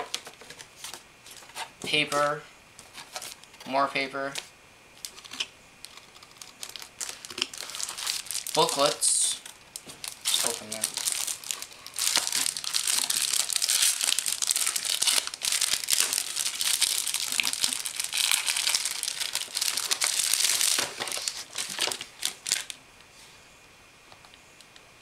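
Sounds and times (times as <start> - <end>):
packaging crinkling: 2.8 - 3.6, 4.3 - 22.8.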